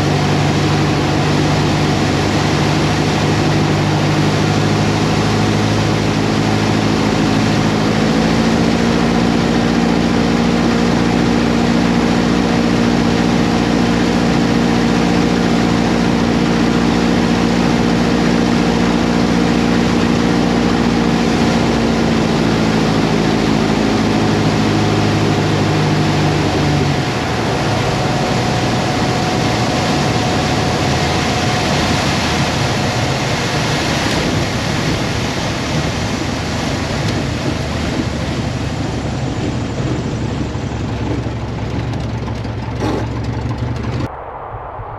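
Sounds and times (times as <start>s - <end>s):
light aircraft engine and propeller: 0.0s - 44.9s
loud rushing air: 43.8s - 44.9s.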